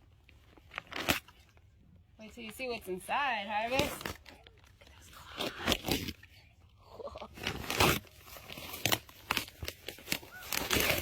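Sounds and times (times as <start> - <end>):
present wrapping tearing: 0.4 - 1.6, 3.6 - 6.3, 7.3 - 11.0.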